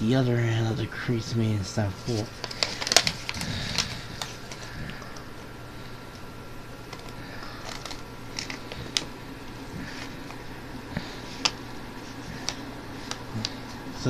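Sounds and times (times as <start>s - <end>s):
paper rustling and crinkling: 1.9s - 4.8s, 6.9s - 9.1s.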